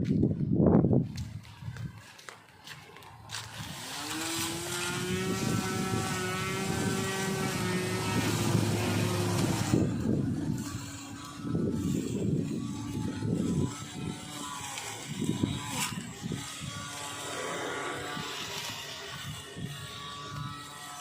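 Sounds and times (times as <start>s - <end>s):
lawn mower motor running: 2.0s - 21.0s
rough rumbling noise: 3.6s - 19.8s.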